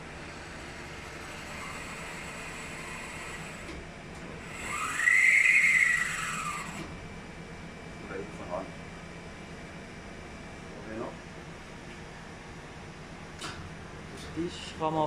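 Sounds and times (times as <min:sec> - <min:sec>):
motor whine: 0:00.0 - 0:11.1.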